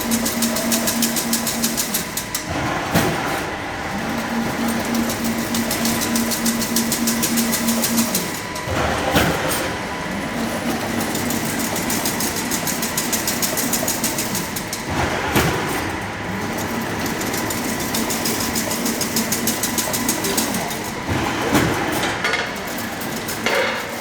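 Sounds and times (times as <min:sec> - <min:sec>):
weaving machine humming and clattering: 0:00.0 - 0:24.0
heavy machine clank: 0:20.0 - 0:24.0.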